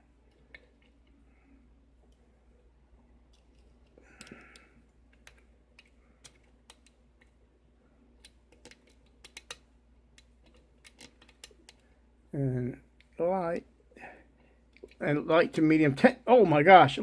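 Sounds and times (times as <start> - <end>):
lock pick clicking on pins: 8.2 - 11.8.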